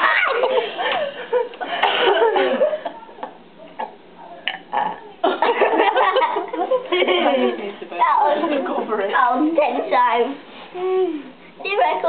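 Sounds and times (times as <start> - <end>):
boy burping: 4.4 - 5.1.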